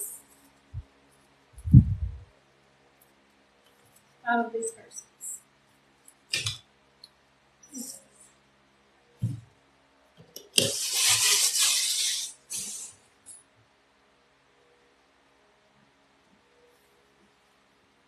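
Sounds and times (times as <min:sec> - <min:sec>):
low thump: 0:09.2 - 0:09.4.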